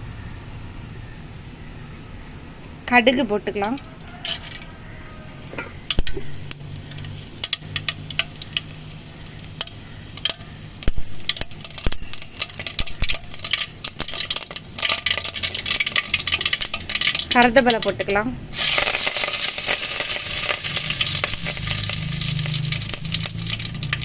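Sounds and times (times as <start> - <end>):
oil sizzling: 5.6 - 24.0
mustard seeds popping in oil: 5.9 - 24.0.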